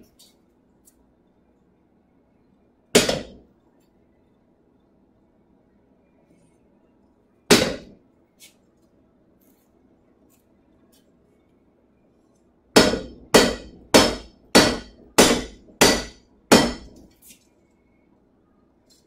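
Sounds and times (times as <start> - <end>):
hammer striking steel on anvil: 3.0 - 3.4, 7.5 - 8.0, 12.8 - 17.1.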